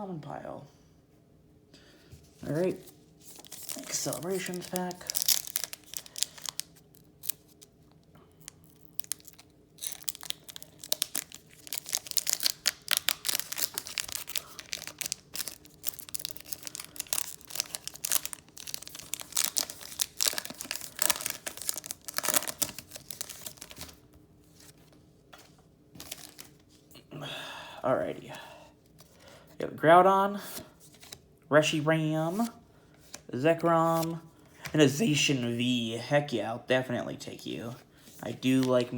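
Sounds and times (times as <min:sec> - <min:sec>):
foil wrapper tearing and crinkling: 0:03.2 - 0:07.7, 0:08.4 - 0:24.0, 0:26.0 - 0:26.6.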